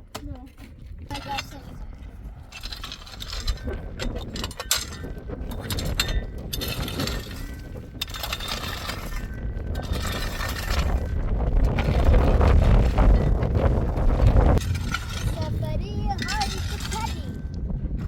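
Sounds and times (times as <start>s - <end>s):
wind rumble on microphone: 0.0s - 18.0s
irregular clicking and clattering: 2.5s - 13.5s.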